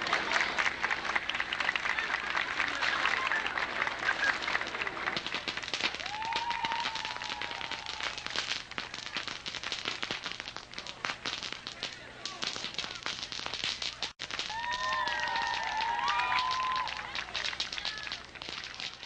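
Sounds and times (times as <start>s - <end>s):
crowd applause: 0.0s - 9.2s, 14.4s - 19.0s.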